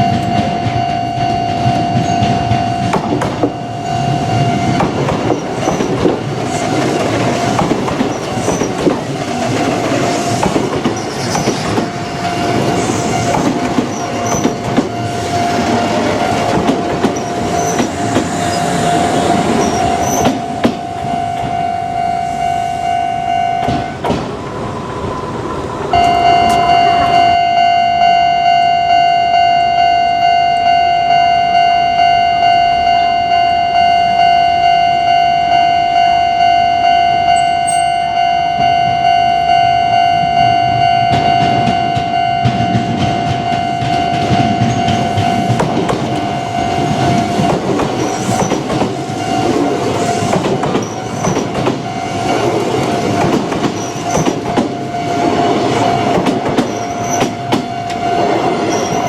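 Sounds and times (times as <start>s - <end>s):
level-crossing warning bell: 0.0s - 59.0s
train wheels clattering over rail joints: 2.0s - 3.6s, 4.6s - 21.1s, 23.6s - 24.5s, 41.1s - 59.0s.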